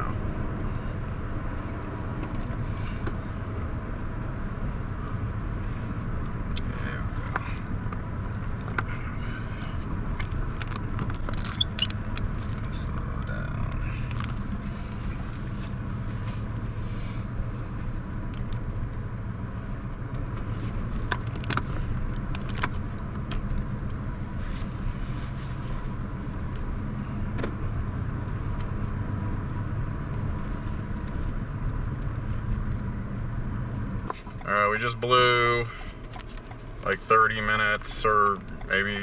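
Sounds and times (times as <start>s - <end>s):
road and engine noise in car: 0.0s - 39.0s
small clicks and rattles: 7.2s - 12.8s, 13.8s - 15.3s, 19.7s - 25.7s.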